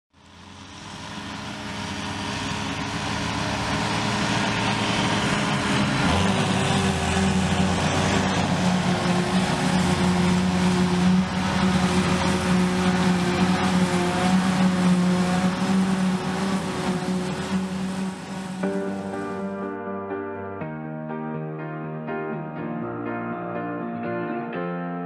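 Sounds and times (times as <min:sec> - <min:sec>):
diesel farm machinery engines: 0:00.2 - 0:19.6.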